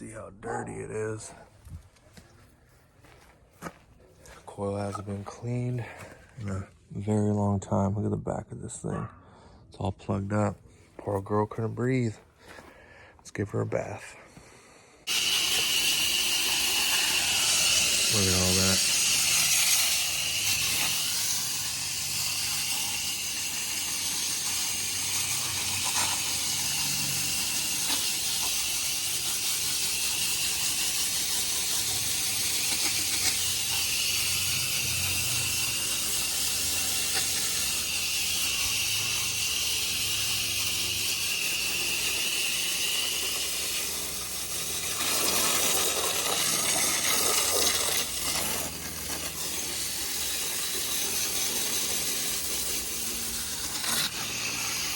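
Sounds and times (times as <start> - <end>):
water spraying hiss: 15.1 - 54.9.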